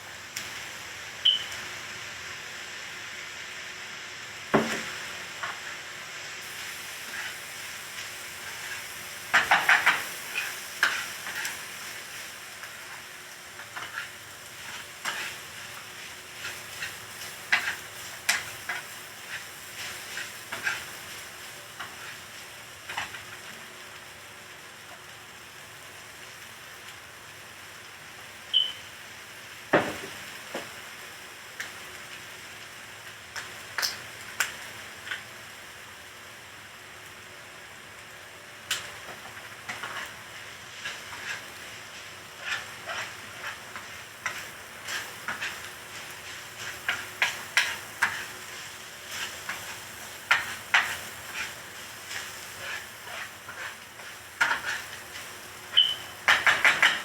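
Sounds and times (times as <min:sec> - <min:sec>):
food sizzling in a pan: 0:00.0 - 0:57.0
utensil scraping a pan: 0:42.4 - 0:57.0.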